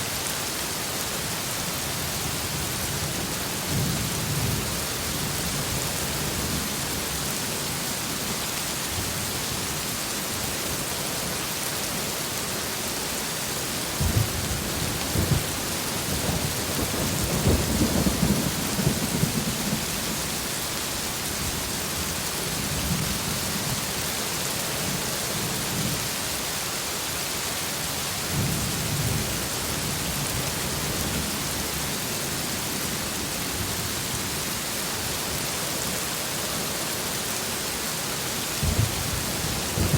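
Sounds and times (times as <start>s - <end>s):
heavy rain: 0.0s - 39.9s
thunder cracking and rumbling: 14.0s - 20.2s, 38.6s - 39.9s.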